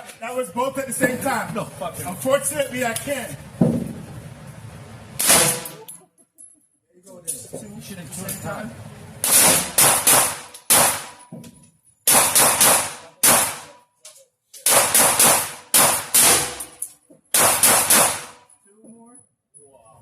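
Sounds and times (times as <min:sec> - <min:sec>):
rifle shots echoing: 0:05.2 - 0:05.8, 0:09.2 - 0:11.2, 0:12.1 - 0:13.8, 0:14.6 - 0:18.5.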